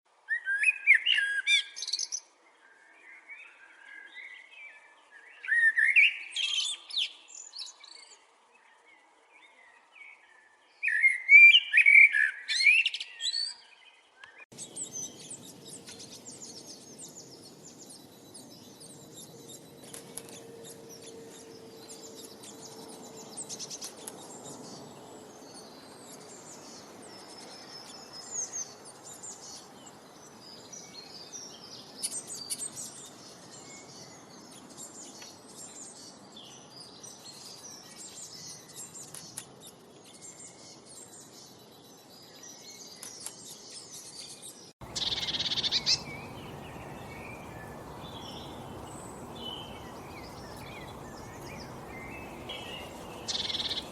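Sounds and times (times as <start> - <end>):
outdoor hiss: 14.6 - 32.9, 44.8 - 53.9
distant bird chirps: 44.8 - 53.9
songbird warbling: 44.8 - 53.9.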